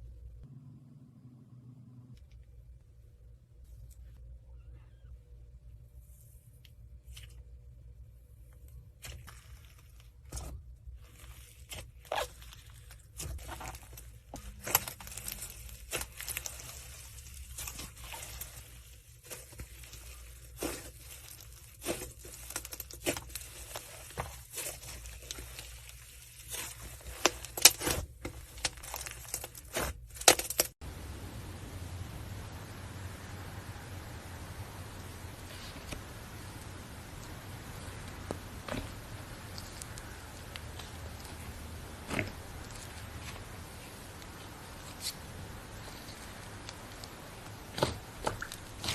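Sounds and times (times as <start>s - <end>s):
slime crackling and popping: 11.0s - 30.8s, 35.6s - 45.2s
steady hiss: 30.8s - 48.6s.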